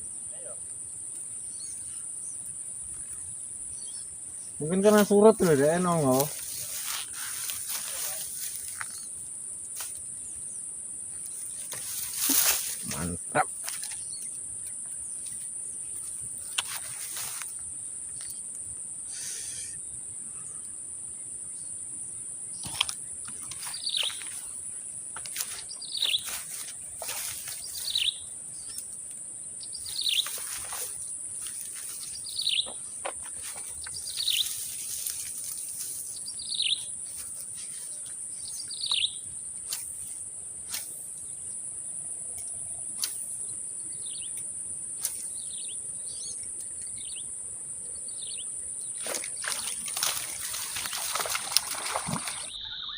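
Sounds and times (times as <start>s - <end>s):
high-pitched insect drone: 49.6s - 52.9s.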